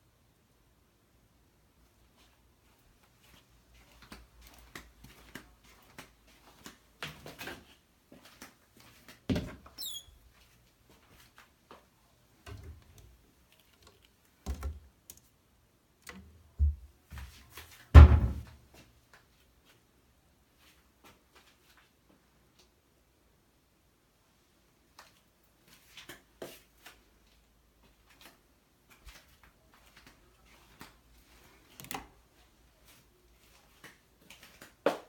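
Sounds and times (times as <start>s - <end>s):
high squeak: 9.8s - 10.2s.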